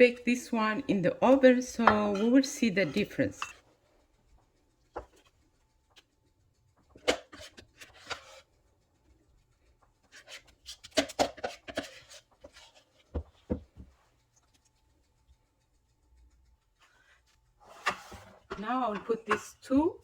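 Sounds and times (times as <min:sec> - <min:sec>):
light taps and knocks of pans: 0:01.8 - 0:03.8, 0:10.1 - 0:14.0, 0:17.7 - 0:20.0
scraping and rustling: 0:06.8 - 0:08.6, 0:10.0 - 0:14.8, 0:16.8 - 0:19.8.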